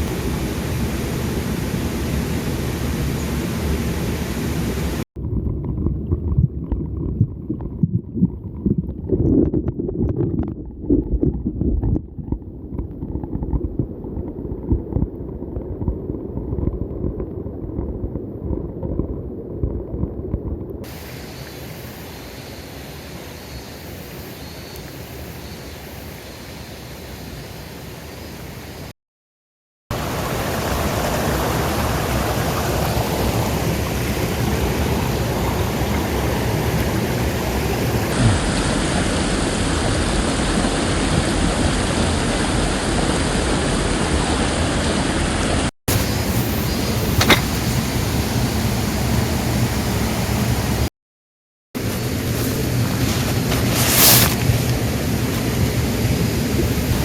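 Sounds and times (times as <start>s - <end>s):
mountain stream rushing: 0.0s - 5.0s, 29.9s - 50.9s
muffled low rumble: 0.0s - 20.8s.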